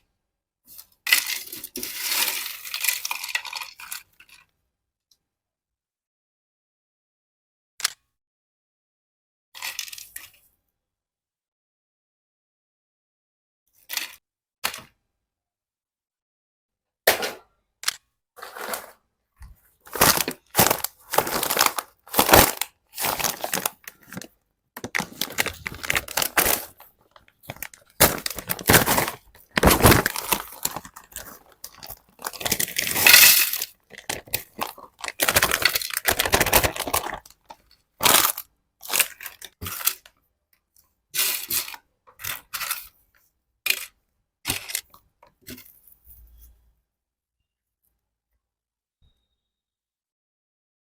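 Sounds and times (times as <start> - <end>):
plastic packet crinkling: 18.4 - 19.0, 19.9 - 39.9
crunchy chips crackling: 19.9 - 39.9.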